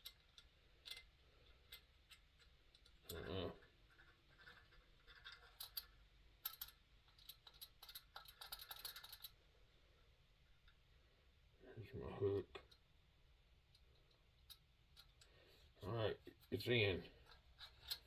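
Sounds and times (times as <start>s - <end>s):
faint metal clicks and scratches: 0.0s - 9.6s, 13.7s - 18.0s.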